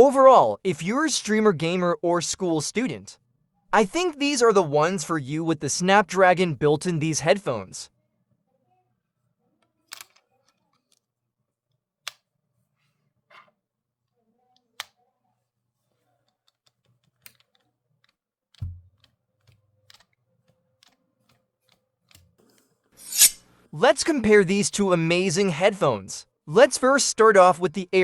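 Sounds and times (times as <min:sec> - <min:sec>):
small plastic clicks and snaps: 0:09.8 - 0:11.1, 0:11.7 - 0:12.3, 0:14.6 - 0:15.0, 0:16.2 - 0:22.7
dull knock: 0:18.6 - 0:18.9.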